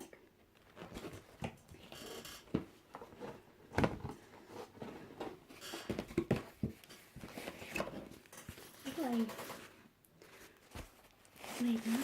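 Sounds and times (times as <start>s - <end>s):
cardboard packaging rustling: 6.0s - 12.0s.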